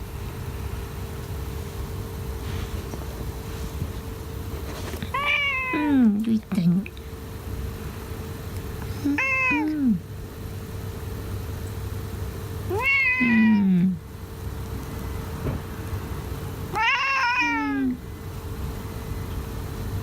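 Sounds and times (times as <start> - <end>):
cat meowing drawn-out: 5.1 - 6.0, 9.1 - 10.0, 12.7 - 14.0, 16.7 - 18.0.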